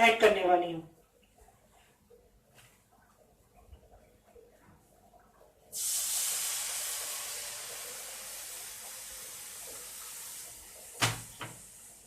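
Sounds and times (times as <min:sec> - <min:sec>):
milk hissing in hot fat: 0:05.7 - 0:12.0.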